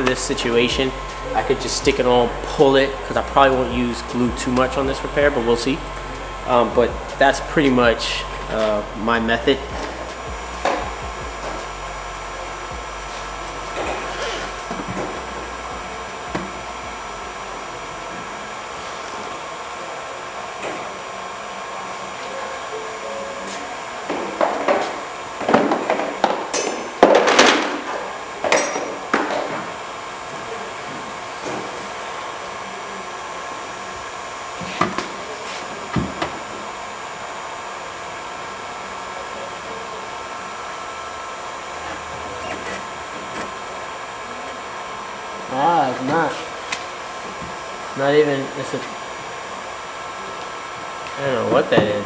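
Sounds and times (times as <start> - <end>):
steady background hum: 0.0 - 52.0
tools knocking on car panels: 24.1 - 29.7.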